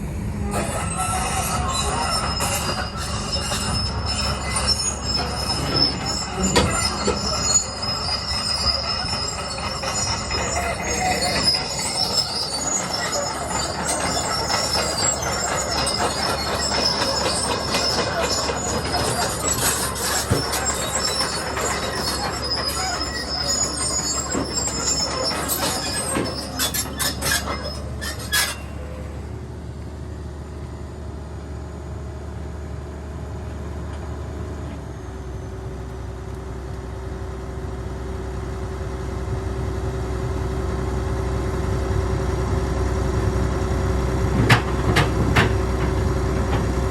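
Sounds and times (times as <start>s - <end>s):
excavator engine running: 0.0s - 46.9s
excavator tracks clanking and squealing: 0.1s - 30.3s, 33.5s - 46.9s.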